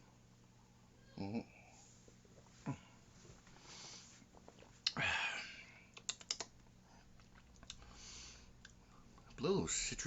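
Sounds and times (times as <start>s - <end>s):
soft breath: 1.6s - 4.3s, 7.8s - 9.1s
lip smacks and tongue clicks: 5.9s - 7.9s, 8.6s - 8.8s.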